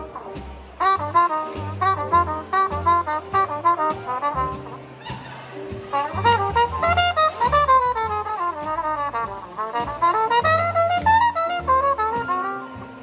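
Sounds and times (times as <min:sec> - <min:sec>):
jazz band with bass: 0:00.0 - 0:13.0
muted trumpet jazz line: 0:00.0 - 0:13.0.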